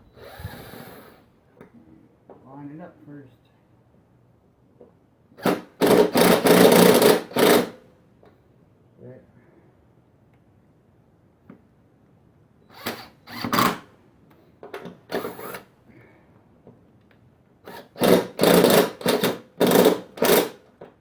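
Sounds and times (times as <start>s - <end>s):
cordless impact driver bursts: 0.2s - 1.2s, 5.4s - 7.8s, 12.7s - 13.8s, 15.1s - 15.7s, 17.7s - 20.6s.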